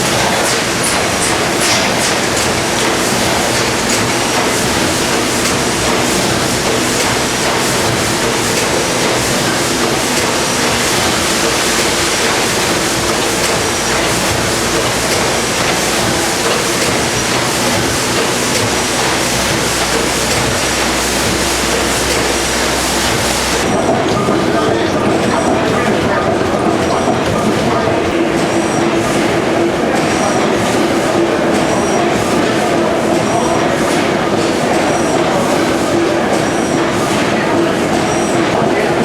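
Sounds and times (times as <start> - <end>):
gas engine running: 0.0 - 32.4.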